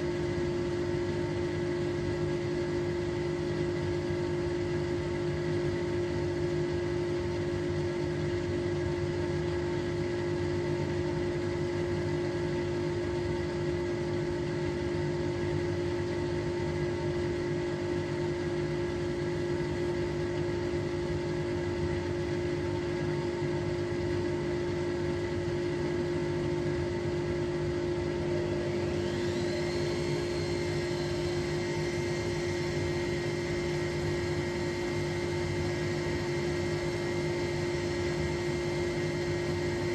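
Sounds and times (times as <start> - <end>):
washing machine motor hum: 0.0 - 39.9
high-pitched whine: 28.7 - 38.9.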